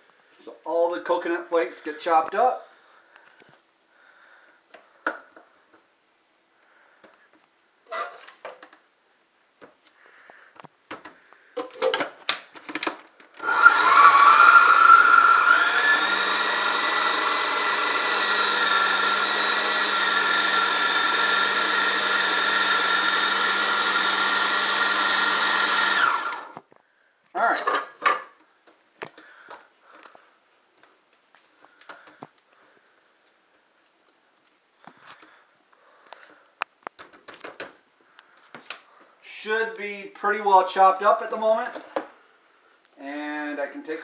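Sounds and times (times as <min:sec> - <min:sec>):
food processor motor whining: 0:13.4 - 0:26.6.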